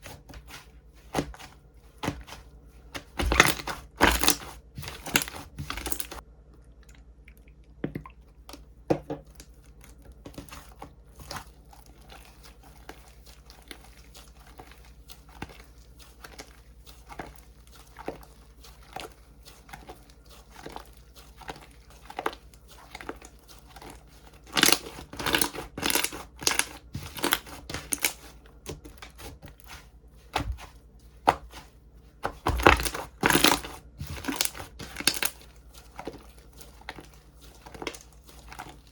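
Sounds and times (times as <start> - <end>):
slime crackling in hands: 11.9 - 28.3, 32.4 - 38.9.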